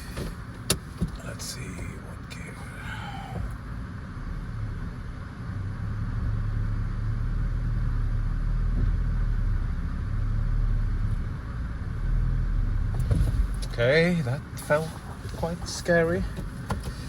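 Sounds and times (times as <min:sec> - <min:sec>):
car engine pulling under load: 0:08.6 - 0:17.0.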